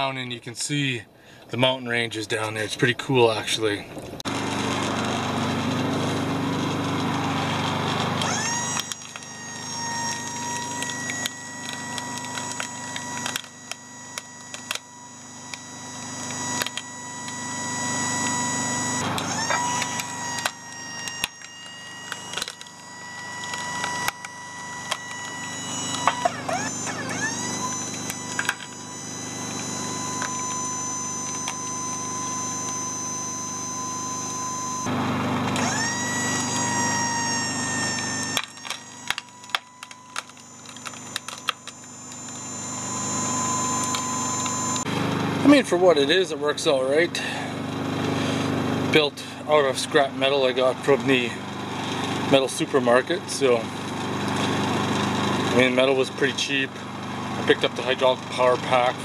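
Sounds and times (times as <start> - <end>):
hydraulic pump whine: 2.3 - 59.0
sharp clicks and cracks: 7.9 - 14.9, 15.5 - 17.4, 18.2 - 32.9, 35.4 - 42.5.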